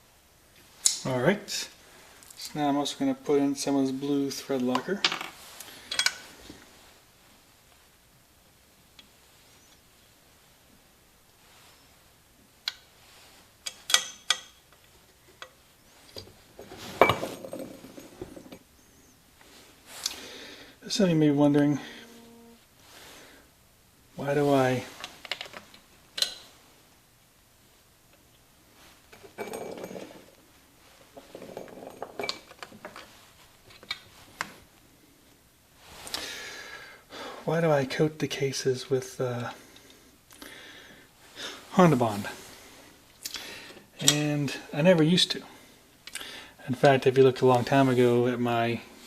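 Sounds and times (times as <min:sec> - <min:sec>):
rustling and scraping: 0:14.8 - 0:20.2, 0:28.8 - 0:34.8
metal tools clinking: 0:29.2 - 0:30.3.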